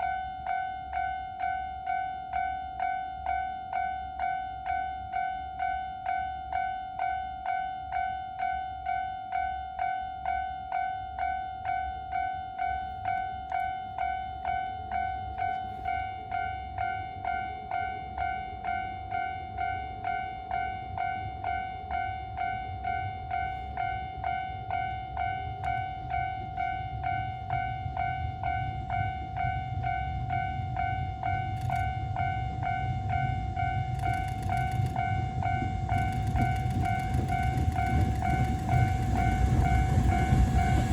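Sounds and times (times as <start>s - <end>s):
level-crossing warning bell: 0.0s - 40.9s
train rumble: 12.8s - 40.9s.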